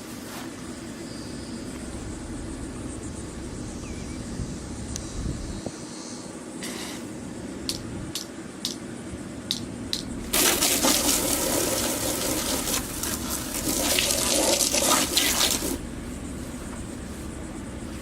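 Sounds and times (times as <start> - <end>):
hose water spraying: 10.1 - 15.8.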